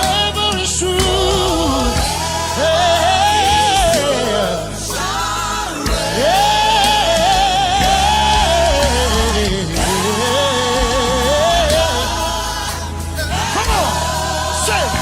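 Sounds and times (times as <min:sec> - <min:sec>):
band with steady bass: 0:00.0 - 0:15.0.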